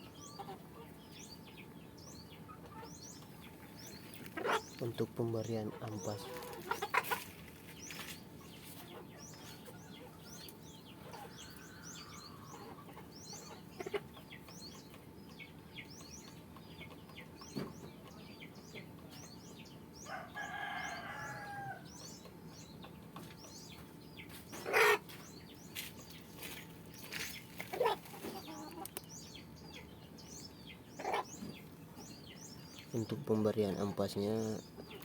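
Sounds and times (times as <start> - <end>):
chickens clucking: 0.0 - 35.0
rooster crowing: 20.0 - 21.9.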